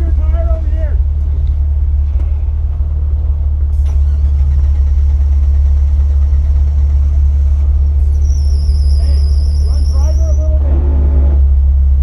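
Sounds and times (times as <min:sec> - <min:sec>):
engine idling low rumble: 0:00.0 - 0:12.0
engine knock: 0:03.3 - 0:12.0.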